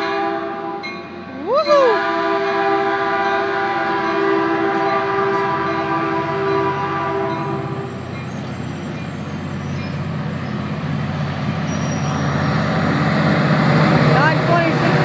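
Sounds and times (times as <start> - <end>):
train horn chord: 0.0 - 1.0, 2.0 - 8.0
train rumble and rail noise: 0.0 - 15.0.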